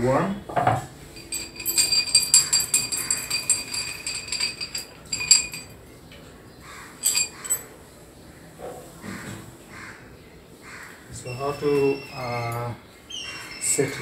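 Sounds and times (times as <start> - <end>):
metal dumbbell parts clinking: 1.2 - 5.8, 7.0 - 7.7.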